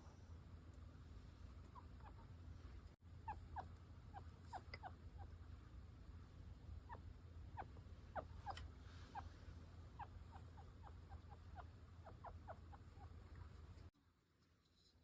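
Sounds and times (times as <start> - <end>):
chinchilla squeaking: 1.7 - 2.3, 3.2 - 5.3, 6.8 - 13.2.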